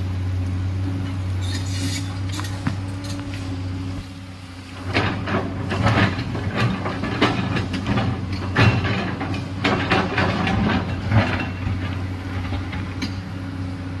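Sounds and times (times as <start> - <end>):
excavator diesel engine: 0.0 - 14.0
bucket clanking and scraping rock: 4.8 - 12.9.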